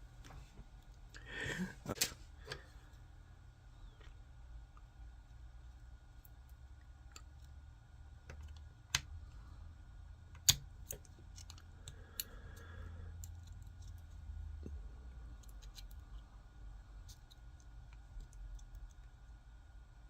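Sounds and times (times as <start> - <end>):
plastic parts clicking and tapping: 8.2 - 9.1, 10.3 - 12.4
plastic parts snapping: 10.3 - 12.3.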